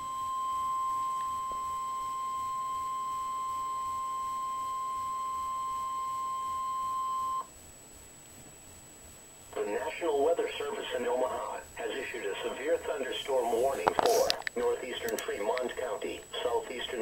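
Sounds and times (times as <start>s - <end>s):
high pure warning tone: 0.0s - 7.6s.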